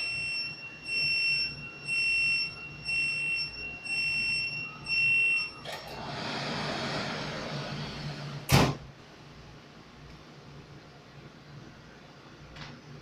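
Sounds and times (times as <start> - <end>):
fire alarm beeping: 0.0 - 5.8.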